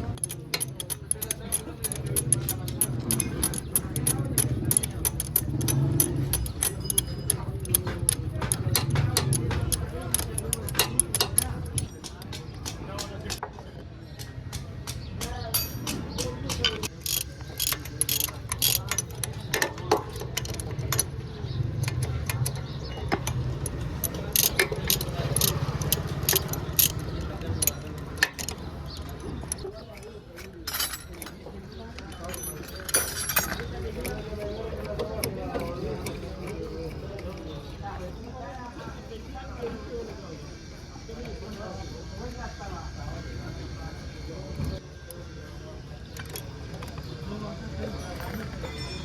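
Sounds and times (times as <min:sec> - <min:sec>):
motorcycle engine idling: 0:00.0 - 0:13.4, 0:14.4 - 0:29.9
sharp metallic clicks: 0:00.0 - 0:13.4, 0:14.2 - 0:37.8, 0:46.0 - 0:49.0
small engine running: 0:00.1 - 0:11.9
metallic ticking knock: 0:00.1 - 0:13.4.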